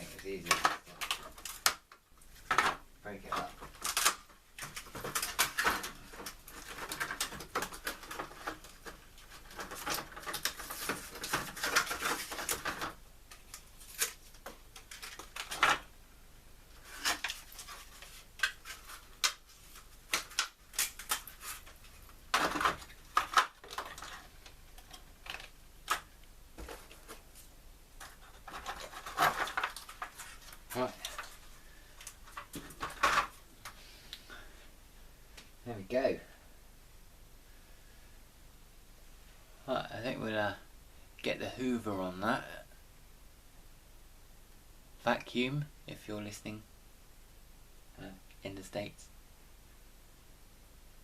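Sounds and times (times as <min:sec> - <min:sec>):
plastic model cracking and snapping: 0:00.4 - 0:02.8, 0:03.4 - 0:15.9, 0:16.9 - 0:26.1, 0:28.0 - 0:31.4.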